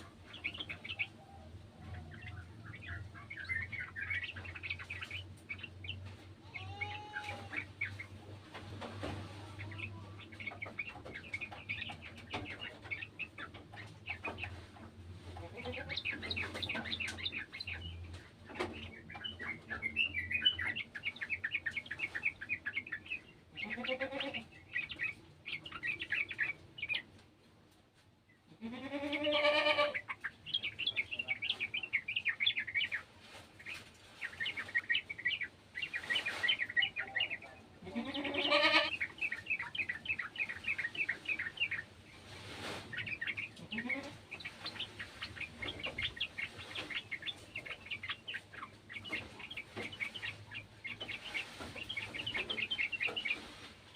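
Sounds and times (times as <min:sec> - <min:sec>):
bulbuls chattering: 0:00.0 - 0:27.4, 0:28.3 - 0:53.9
goat bleating: 0:06.4 - 0:07.6, 0:23.6 - 0:24.5, 0:28.5 - 0:30.0, 0:37.8 - 0:39.0, 0:43.6 - 0:44.2.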